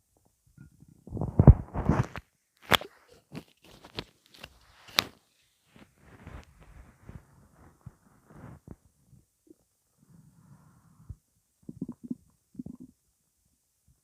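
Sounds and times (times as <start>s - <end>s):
stomach pops and clicks: 1.0s - 5.2s, 11.6s - 12.9s
stomach gurgling: 10.9s - 13.0s.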